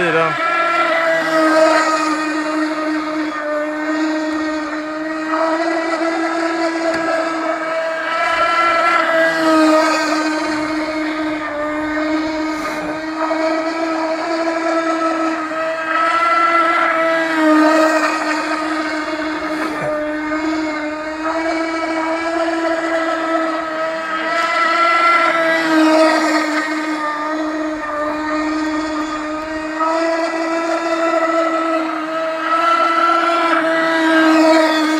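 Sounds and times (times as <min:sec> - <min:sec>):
model boat engine droning: 0:00.0 - 0:34.9.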